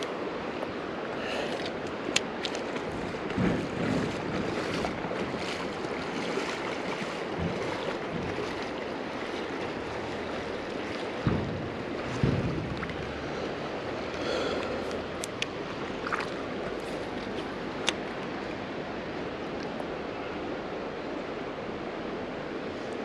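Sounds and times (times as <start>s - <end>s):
creek water rushing: 0.0s - 23.0s
low dull knocks: 2.9s - 5.8s, 6.4s - 14.2s.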